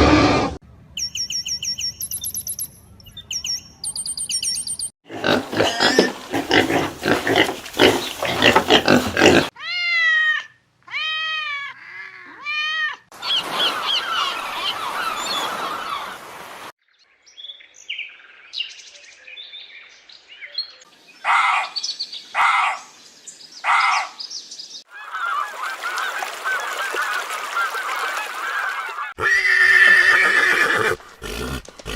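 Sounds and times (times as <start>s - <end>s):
loud animal call: 5.1s - 13.0s, 29.2s - 31.9s.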